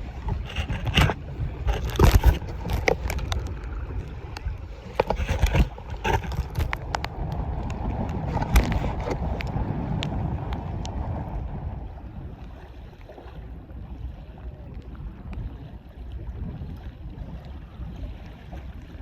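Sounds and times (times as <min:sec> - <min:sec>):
knocks and thumps from handling: 0:00.0 - 0:03.4, 0:04.9 - 0:07.0
wind rumbling on microphone: 0:00.0 - 0:19.0.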